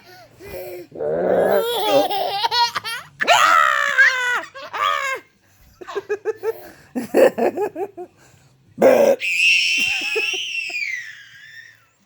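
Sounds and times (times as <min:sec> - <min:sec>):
boy laughing: 0:09.8 - 0:10.5.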